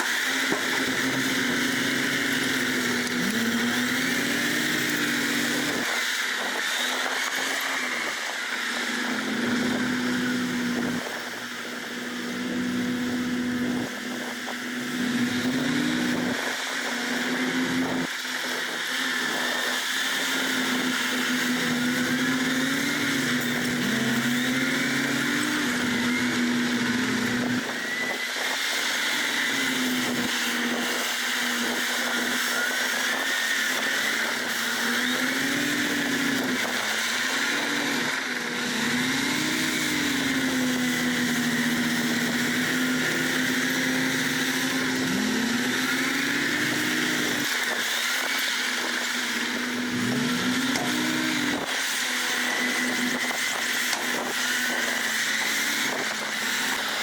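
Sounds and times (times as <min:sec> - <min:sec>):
heavy diesel engine revving: 0:00.0 - 0:06.1, 0:20.3 - 0:27.7, 0:34.6 - 0:47.5.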